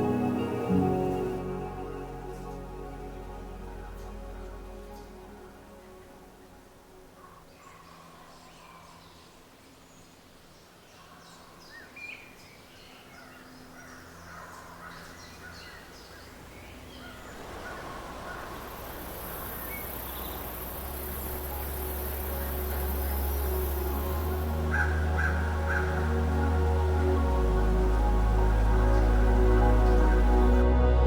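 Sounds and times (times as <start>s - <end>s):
birds chirping: 11.8s - 30.6s
rushing noise with low rumble: 16.6s - 31.0s.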